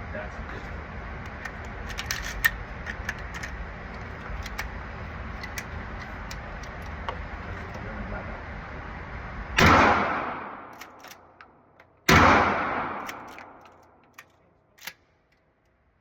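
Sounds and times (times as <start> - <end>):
shotgun shots with echo: 9.6 - 10.8, 12.1 - 13.6.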